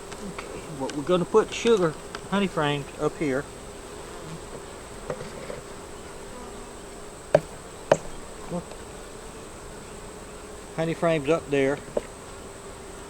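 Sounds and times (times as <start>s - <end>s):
bees buzzing: 0.0s - 13.0s
sharp knocks: 7.3s - 8.1s.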